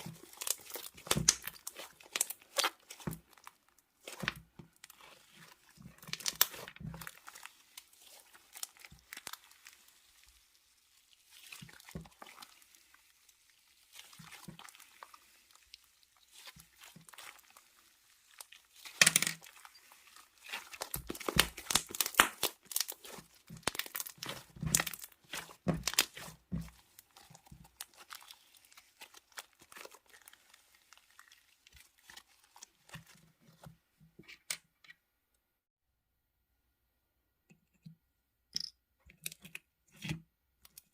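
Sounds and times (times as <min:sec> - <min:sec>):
slime crackling pops: 0:20.5 - 0:26.4.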